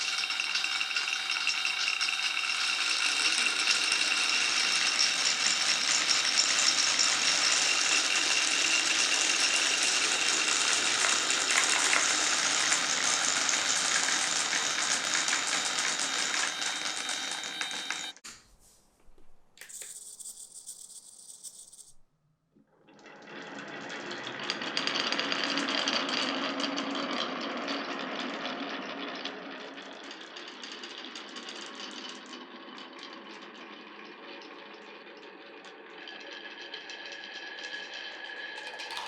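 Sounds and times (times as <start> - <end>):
marbles rattling down a marble run: 0.0 - 18.1, 19.7 - 22.0, 23.0 - 39.0.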